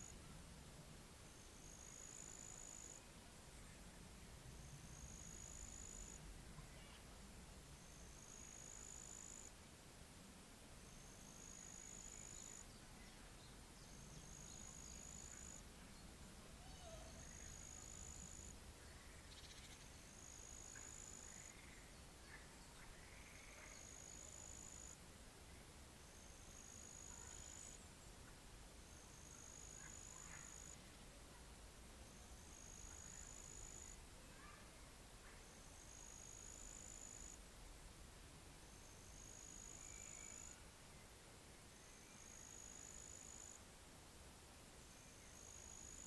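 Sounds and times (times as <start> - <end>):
faint bird chirps: 5.4 - 7.1, 11.4 - 25.0, 29.0 - 31.0, 32.2 - 35.6, 39.6 - 41.1.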